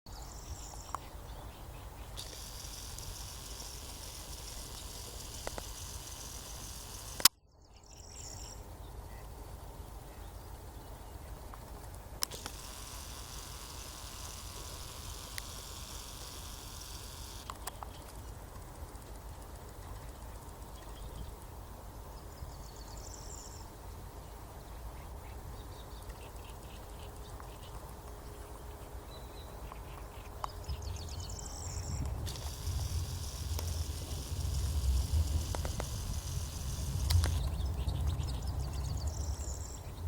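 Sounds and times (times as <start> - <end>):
sharp click: 2.2 - 7.4, 11.8 - 18.2, 32.0 - 38.0
high-pitched insect chorus: 30.8 - 40.0.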